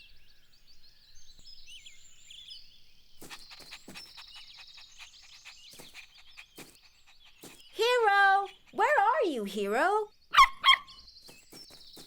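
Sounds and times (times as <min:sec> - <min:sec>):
birds chirping and whistling: 0:03.2 - 0:12.0
high bird trill: 0:03.2 - 0:12.0.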